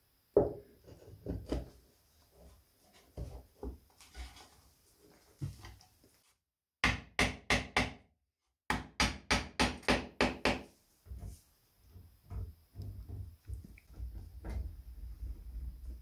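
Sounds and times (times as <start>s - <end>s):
hammer striking wood: 6.8s - 8.0s, 8.7s - 10.7s.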